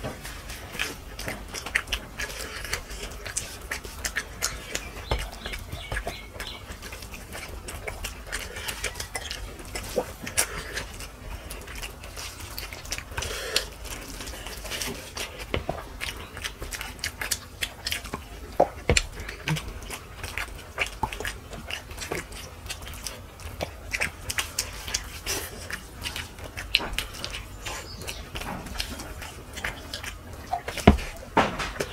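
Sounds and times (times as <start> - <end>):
people chewing food: 0.0 - 31.9.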